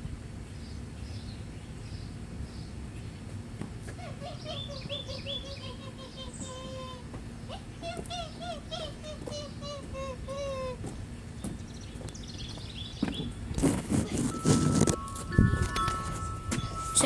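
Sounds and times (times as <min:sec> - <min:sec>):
low outdoor rumble: 0:00.0 - 0:17.0
bird singing: 0:04.1 - 0:07.0, 0:11.0 - 0:13.4, 0:14.2 - 0:17.0.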